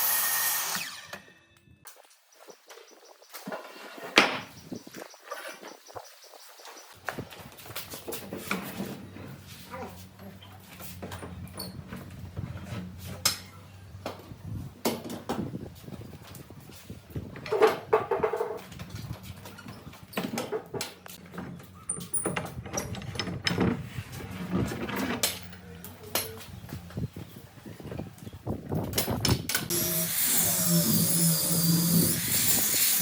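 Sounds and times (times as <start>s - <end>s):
knocks and clatter: 17.3s - 26.4s.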